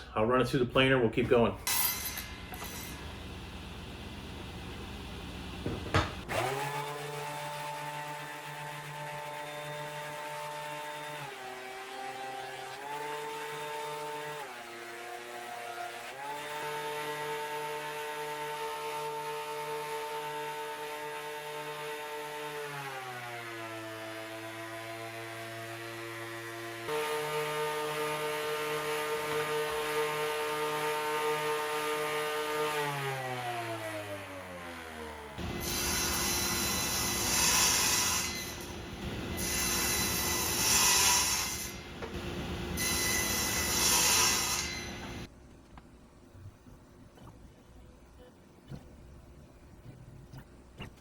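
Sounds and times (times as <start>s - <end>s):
power tool motor whining: 2.5s - 7.2s.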